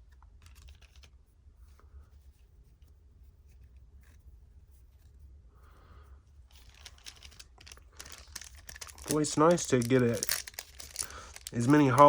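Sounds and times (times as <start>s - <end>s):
trading cards rustling: 0.2s - 1.2s, 6.5s - 12.0s.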